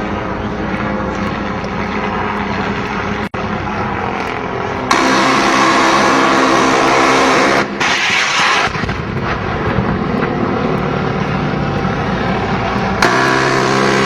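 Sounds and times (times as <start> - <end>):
helicopter turbine and rotor: 0.0 - 14.0
hissy engine sound: 0.0 - 14.0.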